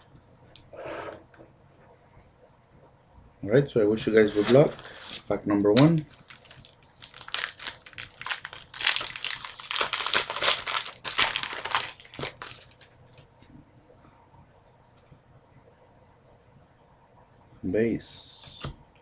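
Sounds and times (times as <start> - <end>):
wrapper crinkling and tearing: 4.9 - 13.0.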